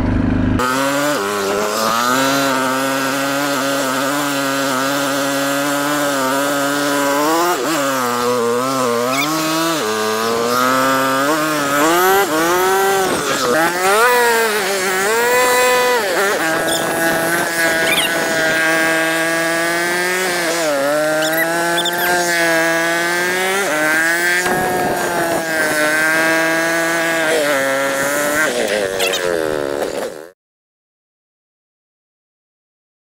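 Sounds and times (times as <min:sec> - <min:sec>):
drone motors whining: 0:06.9 - 0:30.3.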